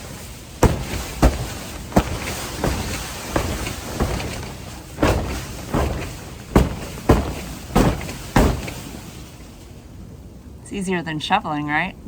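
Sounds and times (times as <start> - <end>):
thumps on plastic shrink wrap: 0.0 - 9.5.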